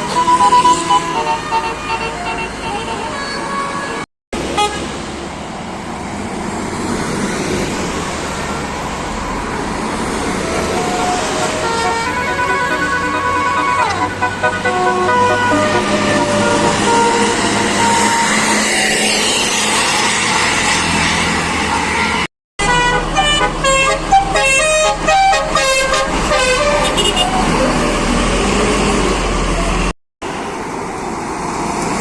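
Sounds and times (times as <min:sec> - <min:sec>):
multi-tone bus air horn melody: 0:00.0 - 0:05.0, 0:10.9 - 0:28.0
bus engine: 0:00.0 - 0:32.0
traffic: 0:00.0 - 0:32.0.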